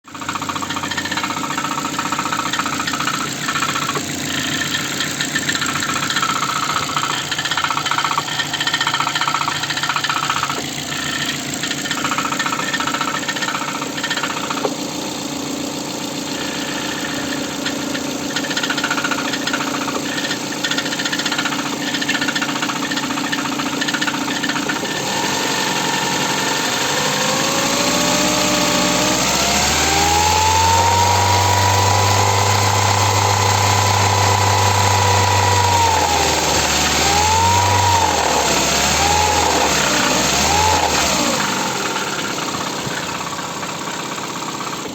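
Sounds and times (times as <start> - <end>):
car engine running: 0.0 - 44.9
engine knock: 0.0 - 44.9.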